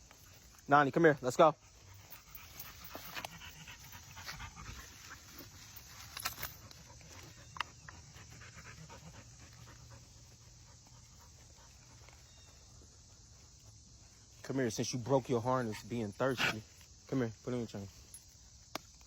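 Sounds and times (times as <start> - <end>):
dog panting: 1.6 - 5.9, 6.5 - 13.7.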